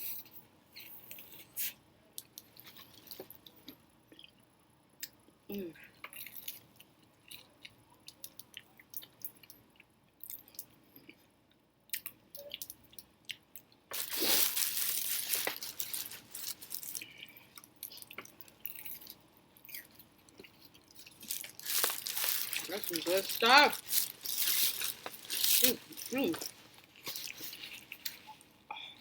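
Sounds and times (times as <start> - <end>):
person chewing: 11.9 - 28.7
loud crunching: 13.9 - 17.0, 21.0 - 28.0.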